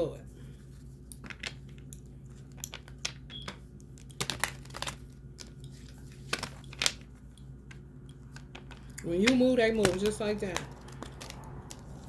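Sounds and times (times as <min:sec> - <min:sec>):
low steady hum: 0:00.0 - 0:12.0
cards being shuffled: 0:03.9 - 0:12.0.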